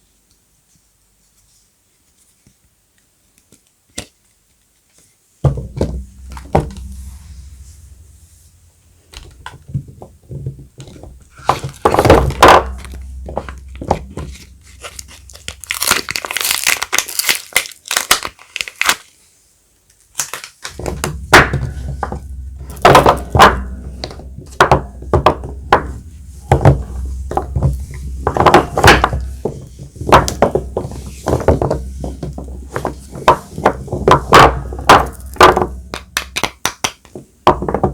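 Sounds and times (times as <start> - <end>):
knocks and taps of handling: 5.4 - 8.1, 20.7 - 37.9
low hum: 5.7 - 17.0, 20.7 - 36.3
wrapping crinkling and tearing: 15.0 - 19.3, 20.0 - 20.8.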